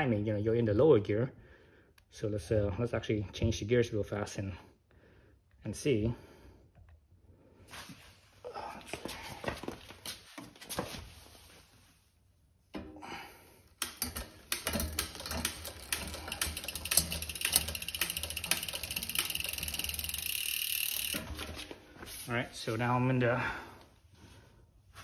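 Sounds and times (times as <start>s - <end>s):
bike chain clicking and ratcheting: 13.8s - 21.8s.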